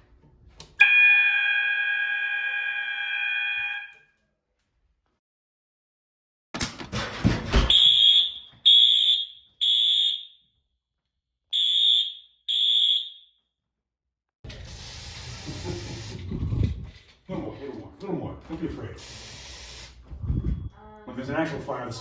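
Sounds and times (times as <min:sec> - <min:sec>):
high electronic alarm beeps: 0:00.8 - 0:04.0, 0:07.7 - 0:10.4, 0:11.6 - 0:13.3
aerosol spray hiss: 0:14.6 - 0:16.3, 0:19.0 - 0:20.0.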